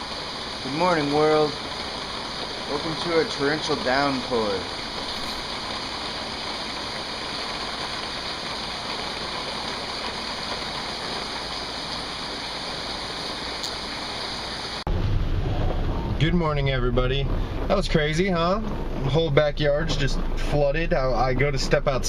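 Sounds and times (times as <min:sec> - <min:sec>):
heavy rain pouring: 0:00.0 - 0:21.4.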